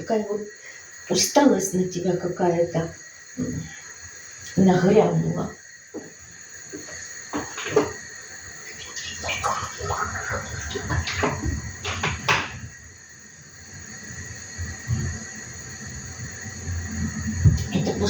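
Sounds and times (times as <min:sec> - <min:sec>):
water splashing: 0:08.6 - 0:12.7
kitchen knocks and clinks: 0:09.8 - 0:12.7.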